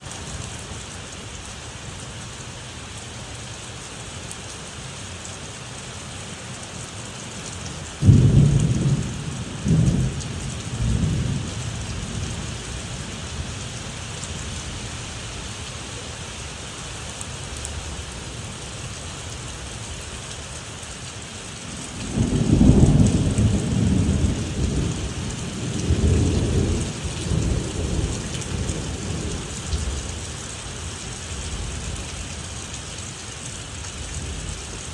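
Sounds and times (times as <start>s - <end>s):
rain hissing: 0.0s - 34.9s
thunder rumbling: 8.0s - 14.8s, 21.6s - 30.4s.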